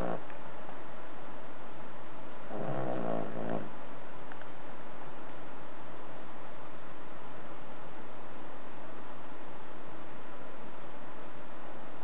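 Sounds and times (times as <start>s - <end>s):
dog snoring: 0.0s - 0.3s, 2.5s - 3.8s.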